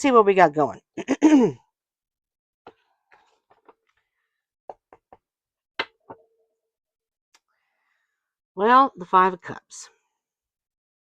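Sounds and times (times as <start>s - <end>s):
cards tapping on a table: 4.7s - 5.2s, 5.8s - 6.2s.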